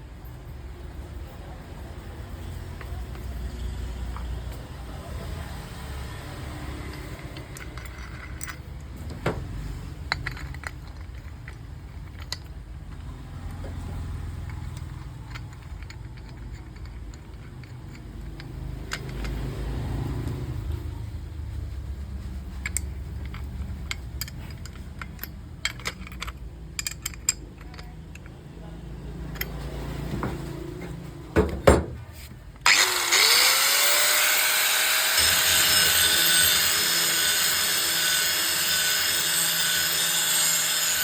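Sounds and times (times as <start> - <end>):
metallic clinks: 6.7 - 9.2, 22.4 - 28.4.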